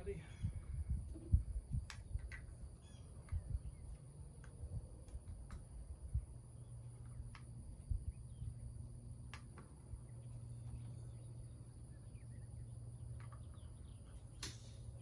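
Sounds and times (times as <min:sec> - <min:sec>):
bird chirps: 0:02.8 - 0:04.0, 0:10.0 - 0:15.0.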